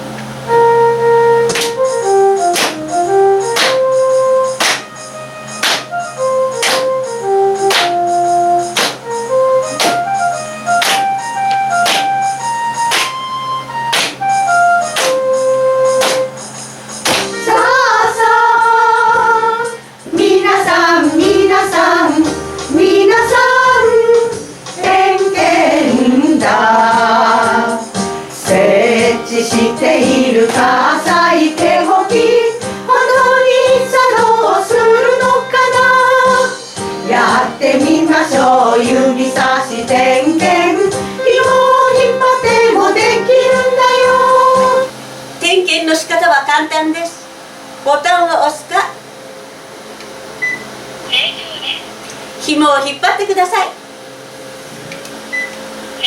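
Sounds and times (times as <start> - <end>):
instrumental backing: 0.0 - 56.0
woman singing: 28.5 - 44.9.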